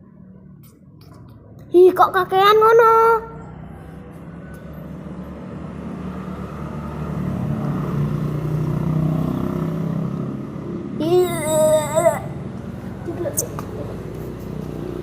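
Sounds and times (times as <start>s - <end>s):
vehicle engine passing by: 3.0s - 15.0s.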